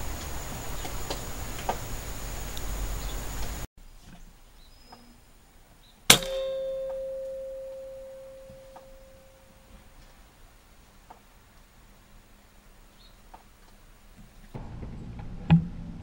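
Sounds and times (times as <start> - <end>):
air rifle shot crack: 6.1 - 6.8
metallic ring: 6.1 - 9.8.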